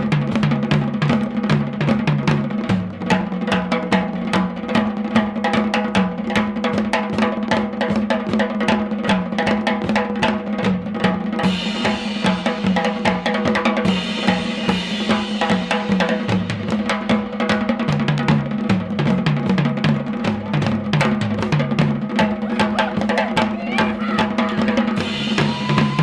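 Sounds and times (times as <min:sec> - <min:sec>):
drum kit beat: 0:00.0 - 0:26.0
bass line: 0:25.0 - 0:26.0.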